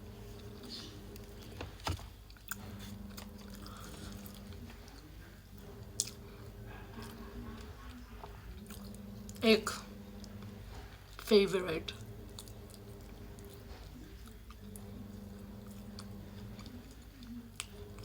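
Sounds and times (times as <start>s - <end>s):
faint steady hum: 0.0s - 18.0s
person chewing: 0.2s - 5.1s, 5.9s - 6.3s, 7.0s - 9.4s, 12.2s - 18.0s.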